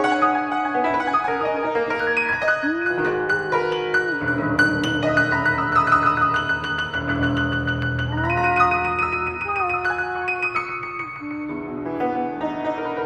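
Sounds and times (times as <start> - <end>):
piano-like keyboard notes: 0.0 - 13.0
low steady bass tone: 2.6 - 10.3.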